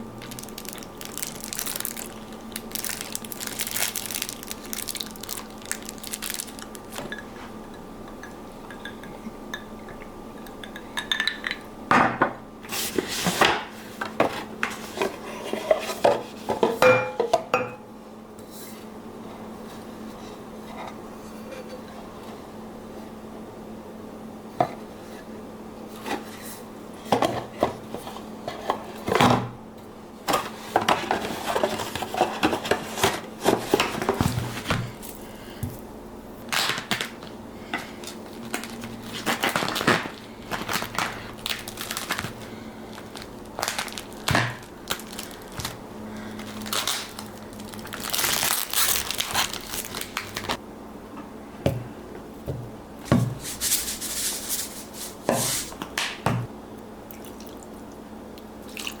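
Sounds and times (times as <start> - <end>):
faint steady hum: 0.0 - 59.0
rustling and crinkling: 0.2 - 7.6, 30.3 - 35.3, 36.8 - 50.6.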